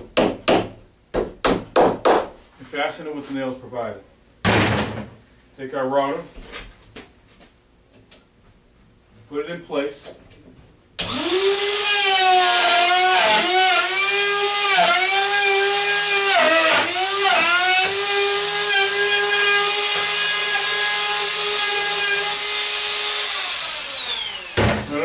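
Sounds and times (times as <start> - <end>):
wood router whining: 11.0 - 25.0.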